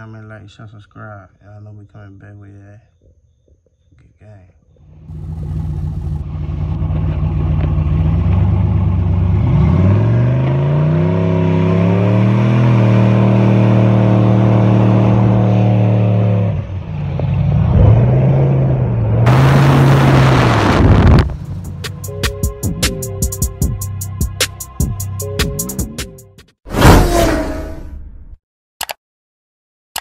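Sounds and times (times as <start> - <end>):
car engine revving: 4.9 - 22.1
loud rushing noise: 19.3 - 21.8.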